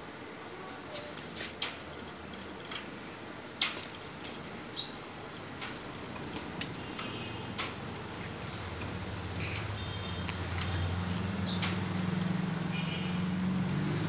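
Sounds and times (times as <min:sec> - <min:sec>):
hand tools clicking and tapping: 0:03.6 - 0:04.6, 0:05.3 - 0:11.9.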